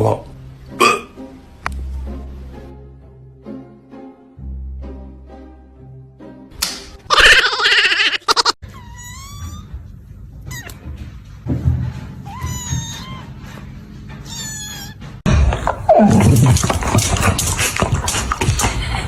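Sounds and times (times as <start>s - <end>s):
cat meowing: 7.1s - 9.8s, 10.5s - 10.8s, 12.2s - 13.5s, 14.2s - 15.1s.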